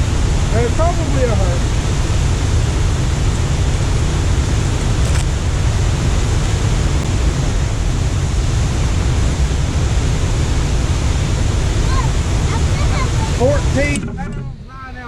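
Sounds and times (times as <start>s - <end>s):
water roaring through spillway: 0.0s - 15.0s.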